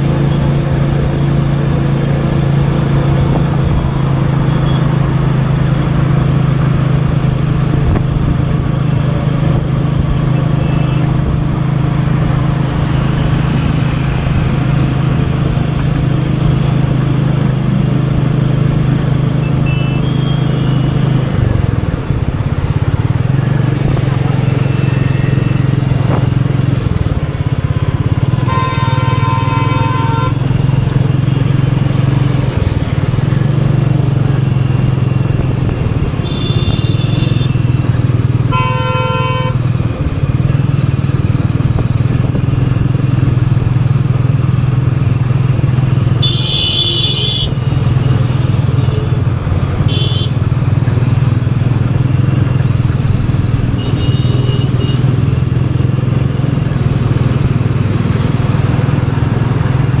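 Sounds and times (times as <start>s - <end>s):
motorcycle engine running: 0.0s - 60.0s
horns honking: 3.9s - 5.5s, 10.2s - 16.8s, 18.8s - 21.9s, 22.7s - 39.8s, 45.9s - 50.7s, 51.7s - 56.0s.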